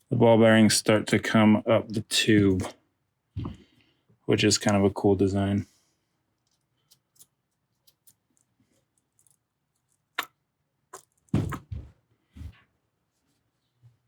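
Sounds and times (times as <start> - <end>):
louder knocks: 11.4 - 11.9.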